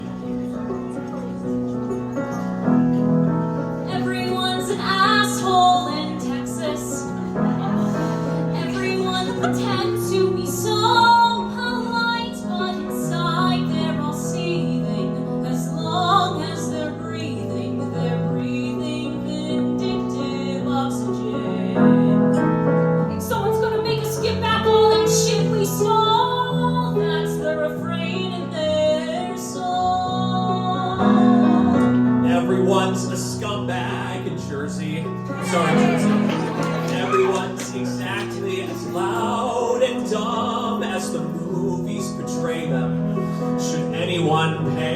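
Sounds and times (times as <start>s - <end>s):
piano accompaniment: 0.0s - 44.9s
person singing: 35.4s - 42.0s.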